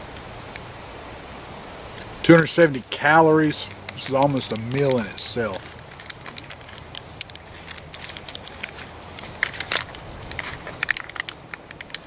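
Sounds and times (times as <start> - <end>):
person chewing: 3.6 - 11.4.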